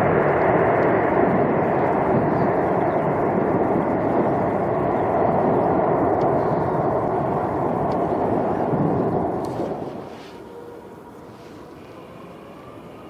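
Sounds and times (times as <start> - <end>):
jet airliner engines roaring: 0.0 - 13.0.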